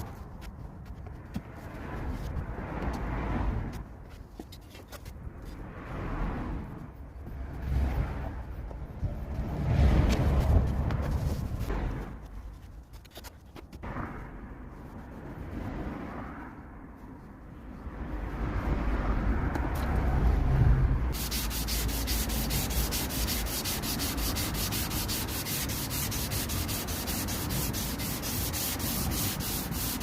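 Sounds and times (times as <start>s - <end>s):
sanding plastic scrape: 21.1s - 30.0s.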